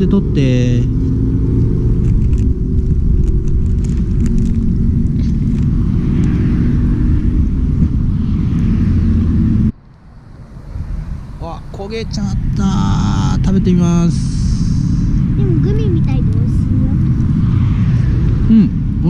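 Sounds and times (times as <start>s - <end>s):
wind buffeting microphone: 0.0s - 19.0s.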